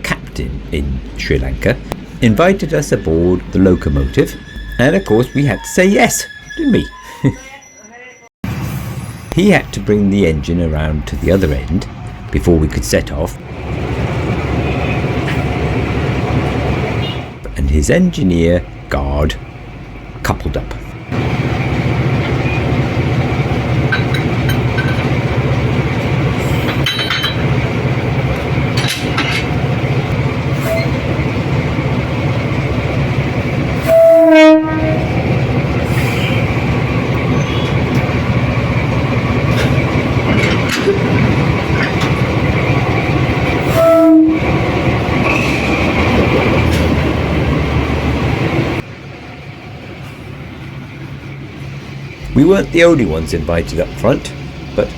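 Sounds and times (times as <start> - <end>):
locomotive engine drone: 0.0 - 54.9
locomotive horn blasts: 16.9 - 17.4, 30.5 - 31.2, 33.8 - 35.4, 43.4 - 45.8.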